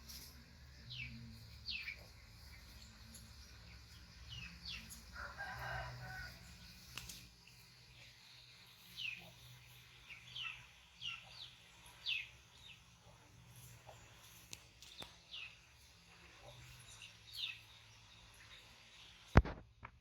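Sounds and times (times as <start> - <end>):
high chirping calls: 0.0 - 12.8.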